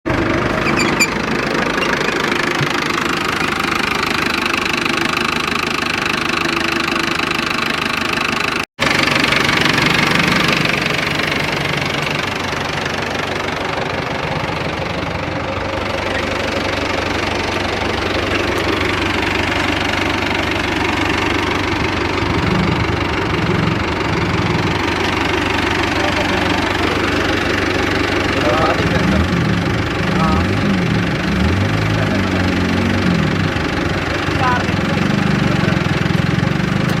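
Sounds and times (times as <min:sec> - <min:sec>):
diesel tractor engine running: 0:00.0 - 0:37.0.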